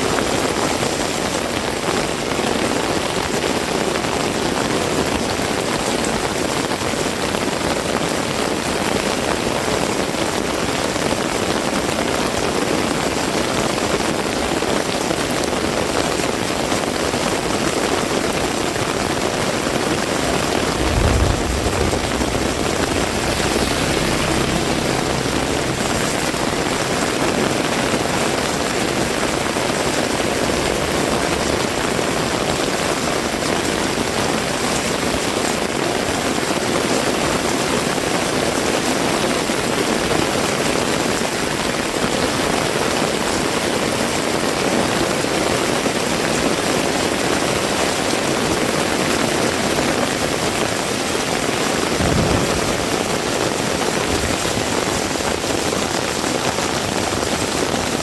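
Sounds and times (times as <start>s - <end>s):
heavy rain falling: 20.1s - 32.2s, 51.9s - 57.6s
brief low rumble: 20.4s - 29.1s, 52.0s - 54.4s.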